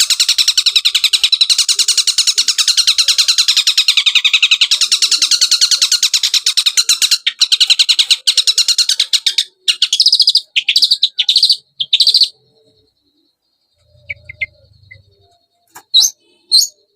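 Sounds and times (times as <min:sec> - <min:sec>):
bird fast chattering song: 0:00.0 - 0:16.9
faint bird chirps: 0:00.0 - 0:16.9.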